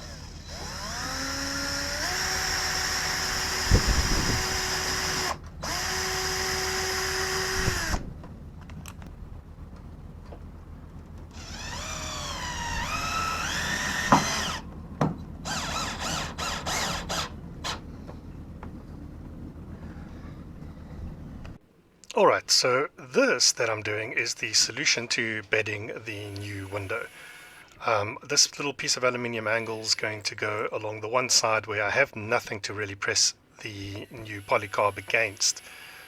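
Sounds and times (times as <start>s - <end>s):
power drill motor whine: 0.0s - 8.0s, 11.3s - 14.7s, 15.4s - 17.8s, 26.1s - 27.7s, 33.9s - 36.0s.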